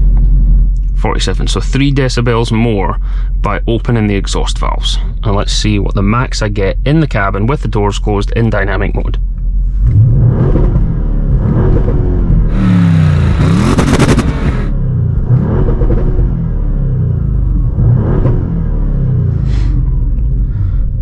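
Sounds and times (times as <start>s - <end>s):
car engine revving: 9.8s - 19.4s.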